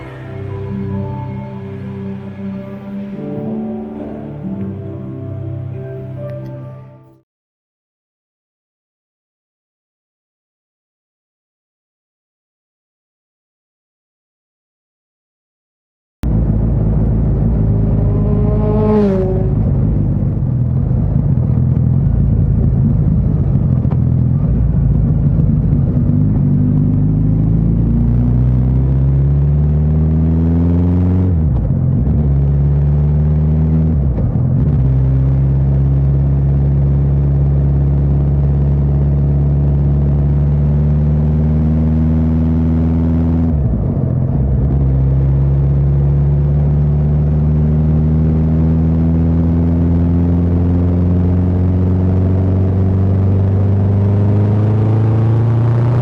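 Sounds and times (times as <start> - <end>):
motorcycle engine revving through gears: 16.3 - 56.0.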